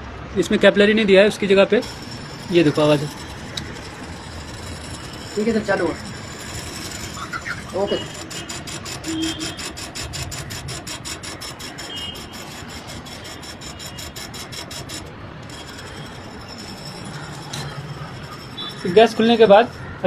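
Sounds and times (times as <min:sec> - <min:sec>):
valve clicking rapidly: 0:01.8 - 0:19.8.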